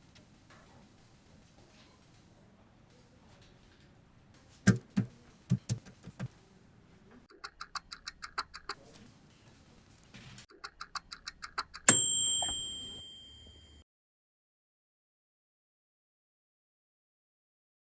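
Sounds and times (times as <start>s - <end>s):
hard knocks: 4.7s - 6.3s
kitchen timer dial clicking: 7.4s - 8.8s, 10.6s - 13.1s
timer bell ding: 11.9s - 13.8s.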